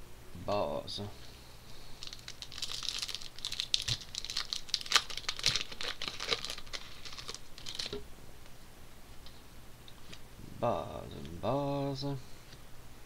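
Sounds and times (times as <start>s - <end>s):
wrapper crinkling and tearing: 2.0s - 8.0s.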